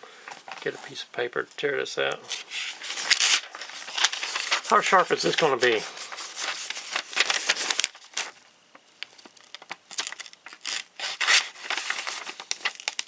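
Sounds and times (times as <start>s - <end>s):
knife slicing paper: 10.6s - 13.0s.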